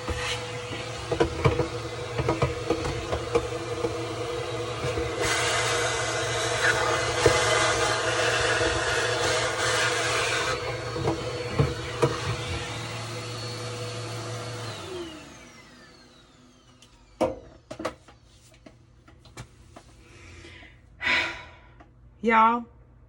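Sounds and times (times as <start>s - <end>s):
vacuum motor winding down: 0.0s - 17.2s
vacuum cleaner running: 0.0s - 18.0s.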